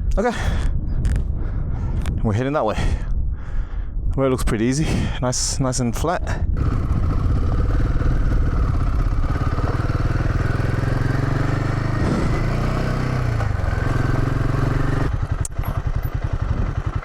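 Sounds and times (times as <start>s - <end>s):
motorcycle engine running: 6.6s - 17.0s.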